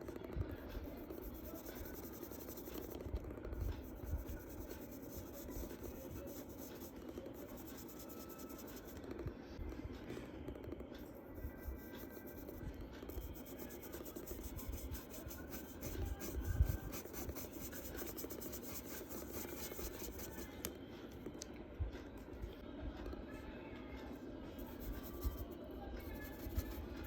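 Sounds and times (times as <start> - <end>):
pencil scratching on paper: 0.8 - 9.0, 11.5 - 20.5, 24.6 - 27.0.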